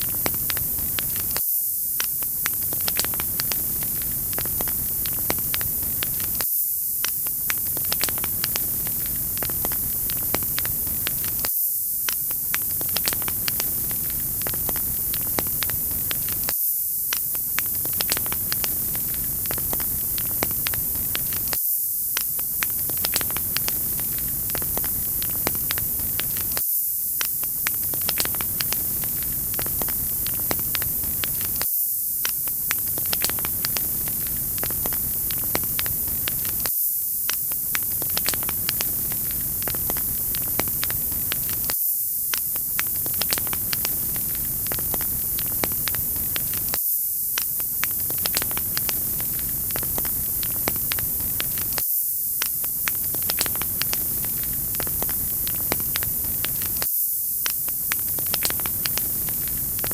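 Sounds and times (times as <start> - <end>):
wood fire crackling: 0.0 - 1.4, 2.0 - 6.4, 7.0 - 16.5, 17.1 - 26.6, 27.2 - 31.6, 32.2 - 36.7, 37.3 - 46.8, 47.4 - 51.8, 52.4 - 59.9.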